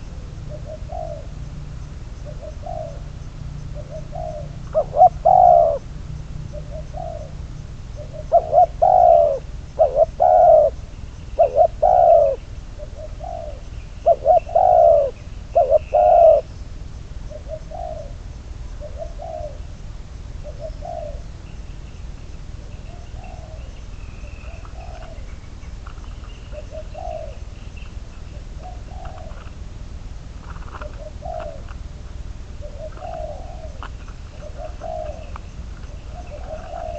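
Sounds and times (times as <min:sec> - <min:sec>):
dove cooing: 0:00.0 - 0:16.6, 0:17.2 - 0:19.8, 0:20.4 - 0:36.9.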